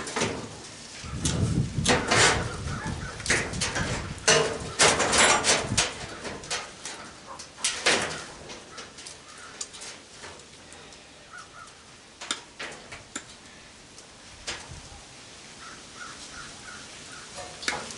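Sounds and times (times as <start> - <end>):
sheet metal clanking and scraping: 0.0 - 10.4.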